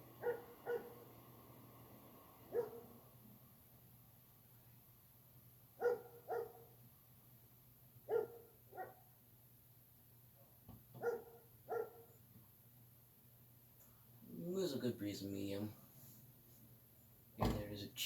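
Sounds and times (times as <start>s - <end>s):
ceiling fan humming: 0.0s - 10.3s
dog barking: 0.2s - 1.1s, 2.5s - 3.0s, 5.8s - 6.8s, 8.1s - 9.1s, 11.0s - 12.2s.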